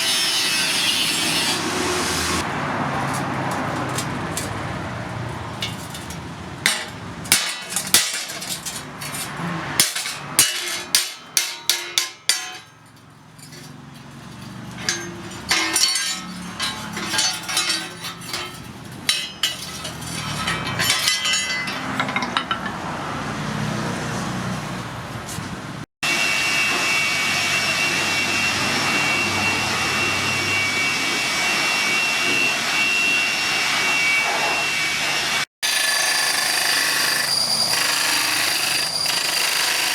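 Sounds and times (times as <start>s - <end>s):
hammer striking steel: 5.6s - 13.0s, 14.8s - 23.0s
power tool whining: 26.1s - 39.9s.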